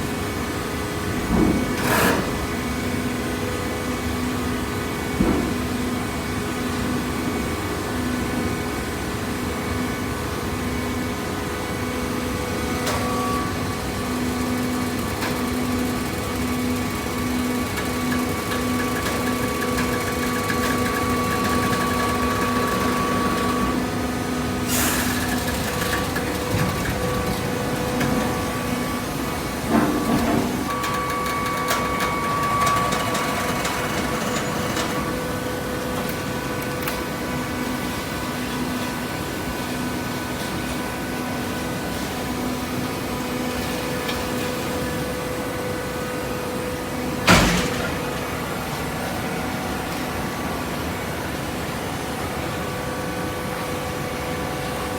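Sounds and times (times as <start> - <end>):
short clunk: 47.3 - 48.2.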